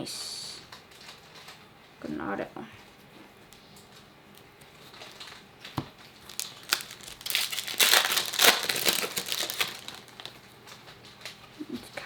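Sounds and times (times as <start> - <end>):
plastic packaging crinkling: 4.8 - 11.4.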